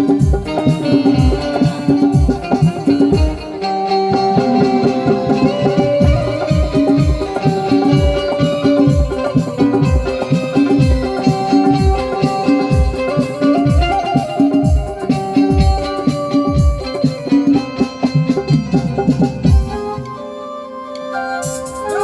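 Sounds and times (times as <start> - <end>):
plucked-string melody: 0.0 - 20.3
low drum beat: 5.5 - 10.2.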